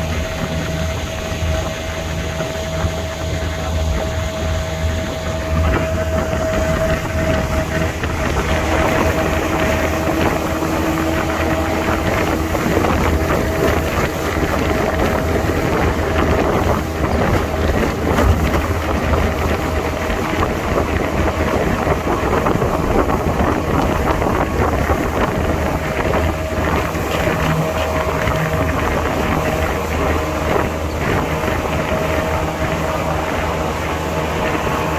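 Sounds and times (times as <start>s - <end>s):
vehicle engine drone: 0.0s - 34.9s
wind buffeting microphone: 0.0s - 34.9s.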